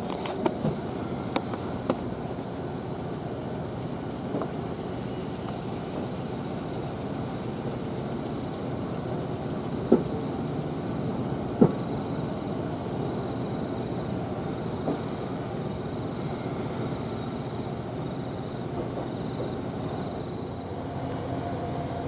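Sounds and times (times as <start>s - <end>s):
train coach rumble: 9.2s - 22.0s.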